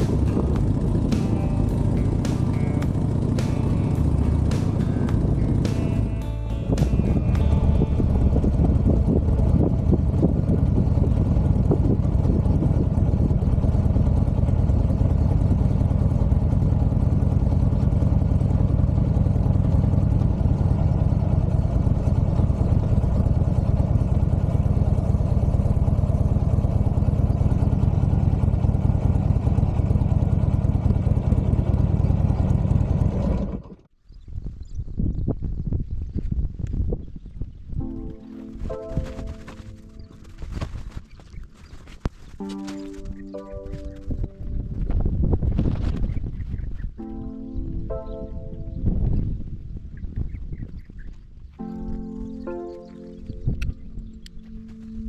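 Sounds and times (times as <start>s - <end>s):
motorcycle engine running: 0.0s - 33.9s.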